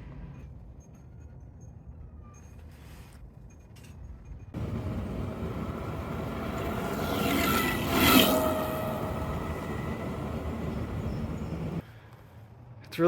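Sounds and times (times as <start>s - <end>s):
vehicle passing by: 4.6s - 11.8s.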